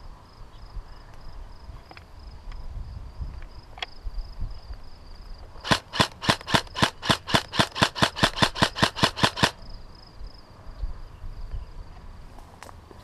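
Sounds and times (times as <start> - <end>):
high insect trill: 0.0 - 12.0
airsoft rifle shots: 5.6 - 9.6.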